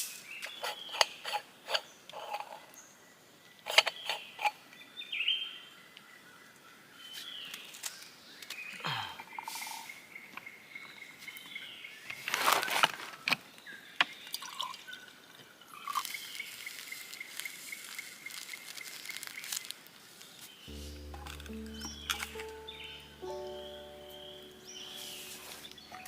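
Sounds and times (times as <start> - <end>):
water dripping and trickling: 14.3 - 19.8
high-pitched trill: 20.7 - 26.0.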